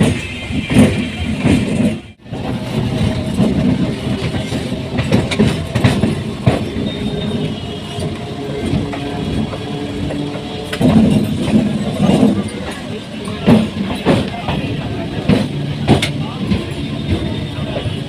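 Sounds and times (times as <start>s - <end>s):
electric train rumbling on tracks: 0.0s - 18.0s
wheel clicks over rail joints: 2.6s - 18.0s.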